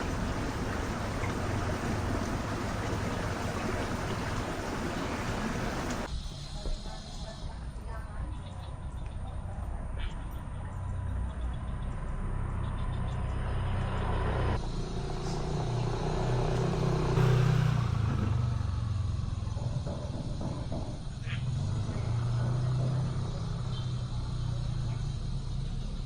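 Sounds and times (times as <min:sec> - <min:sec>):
vehicle engines running: 0:00.0 - 0:06.1, 0:08.2 - 0:26.0
vehicle passing close: 0:00.0 - 0:06.1, 0:12.2 - 0:20.0.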